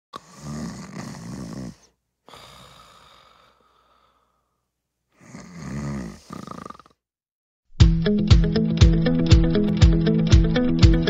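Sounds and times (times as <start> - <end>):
person snoring: 0.2 - 7.1.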